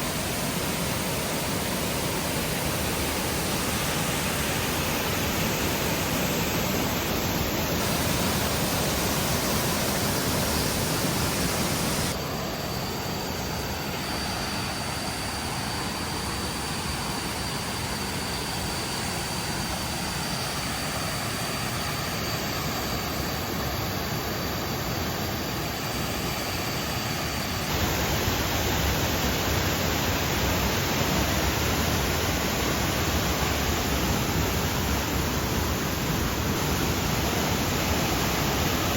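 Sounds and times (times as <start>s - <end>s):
waterfall rushing: 0.0s - 12.1s, 27.7s - 38.9s
thin steady high tone: 0.0s - 38.9s.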